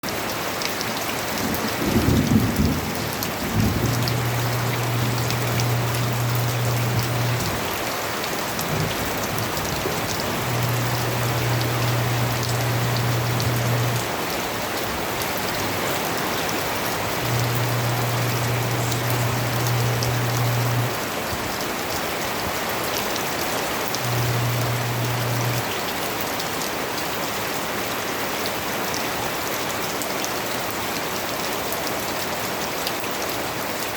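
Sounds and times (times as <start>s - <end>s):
steady rain falling: 0.0s - 33.9s
low hum: 3.2s - 7.6s, 8.7s - 14.0s, 17.0s - 20.9s, 24.0s - 25.6s.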